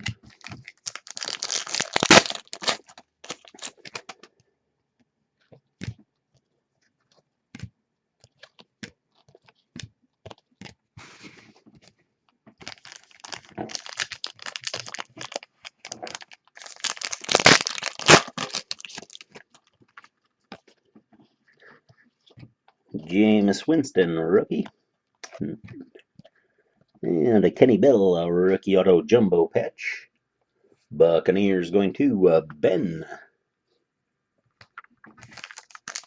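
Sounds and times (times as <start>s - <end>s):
wrappers tearing and crinkling: 0.0s - 4.2s, 12.6s - 20.6s, 35.2s - 36.0s.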